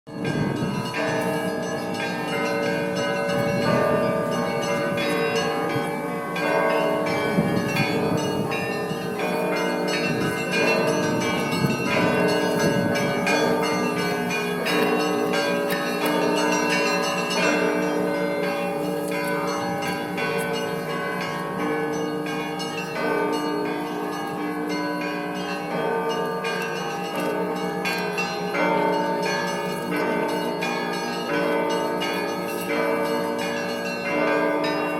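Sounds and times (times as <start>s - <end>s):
church bells ringing: 0.1s - 34.9s
deep bells ringing: 0.1s - 34.9s.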